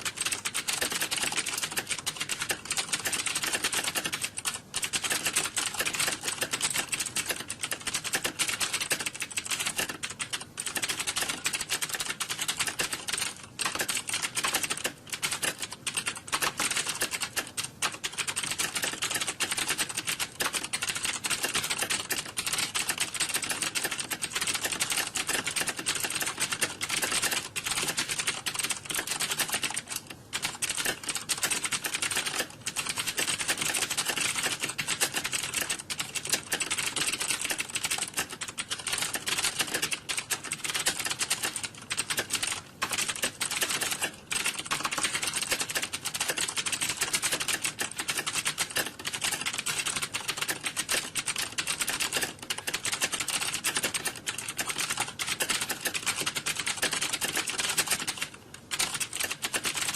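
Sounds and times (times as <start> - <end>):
many keyboards typing: 0.0 - 59.9.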